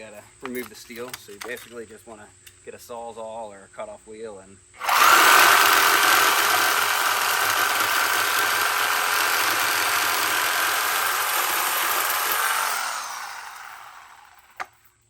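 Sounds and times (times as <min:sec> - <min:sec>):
angle grinder cutting metal: 0:04.8 - 0:14.8.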